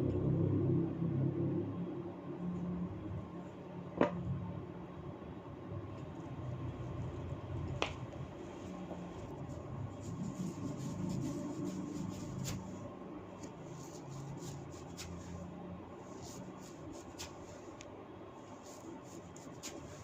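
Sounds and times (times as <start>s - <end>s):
low steady hum: 0.0s - 20.0s
hands working through hair: 9.4s - 12.8s, 13.4s - 15.4s, 16.2s - 17.8s, 18.6s - 20.0s.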